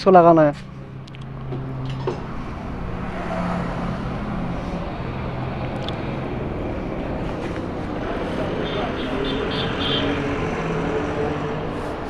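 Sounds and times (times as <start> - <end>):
road traffic rumble: 0.0 - 12.0
vehicle engine noise: 0.0 - 12.0
low engine hum: 0.4 - 8.3.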